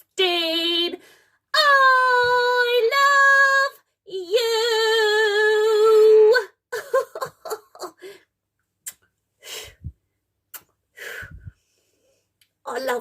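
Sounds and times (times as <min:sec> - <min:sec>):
breathing: 0:01.0 - 0:01.5, 0:09.4 - 0:10.0, 0:10.9 - 0:12.4
person giggling: 0:06.7 - 0:08.1.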